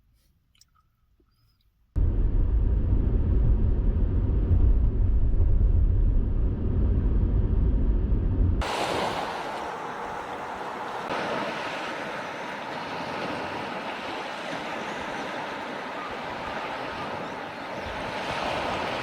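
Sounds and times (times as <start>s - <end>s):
car road noise rumble: 2.0s - 11.4s
hissy rushing noise: 8.6s - 14.1s.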